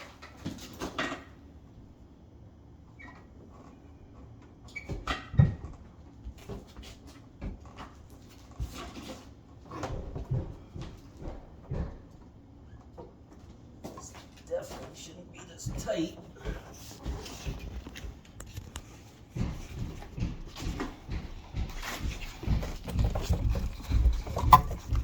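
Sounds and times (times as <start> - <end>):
knocks and scrapes under counter: 16.5 - 25.0.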